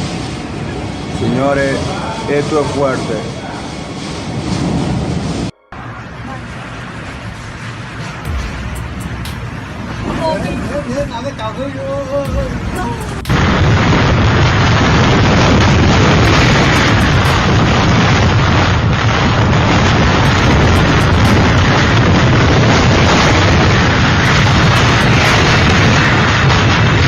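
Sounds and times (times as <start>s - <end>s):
strong wind buffeting microphone: 9.5s - 27.0s.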